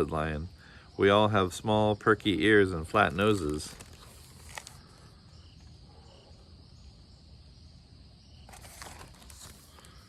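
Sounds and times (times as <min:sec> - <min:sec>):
soft rustle: 0:03.2 - 0:05.0, 0:08.5 - 0:10.0.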